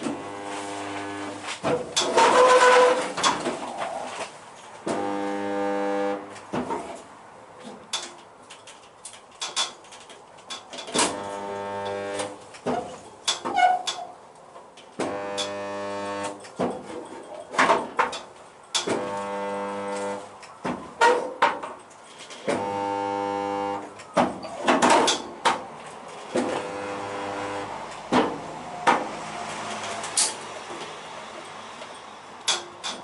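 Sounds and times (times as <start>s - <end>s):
spot welder humming: 0.0s - 1.5s, 4.9s - 6.3s, 11.0s - 12.4s, 15.0s - 16.4s, 18.8s - 20.3s, 22.5s - 23.9s, 26.4s - 27.8s.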